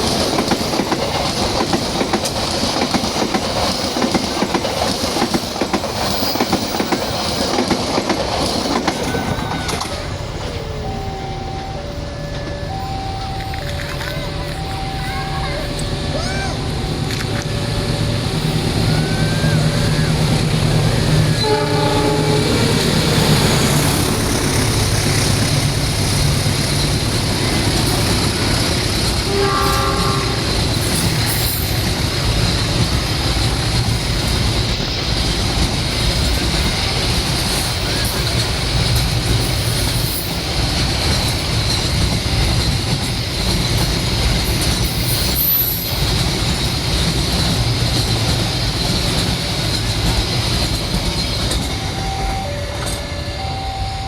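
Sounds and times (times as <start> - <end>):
train rumbling past: 0.0 - 54.0
brief tones: 10.7 - 15.9, 51.7 - 54.0.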